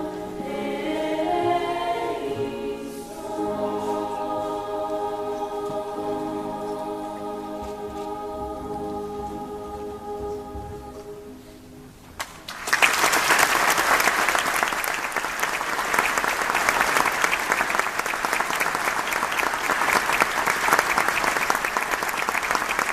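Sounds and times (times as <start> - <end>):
choir and piano chord: 0.0 - 11.8
audience applauding: 12.2 - 22.9.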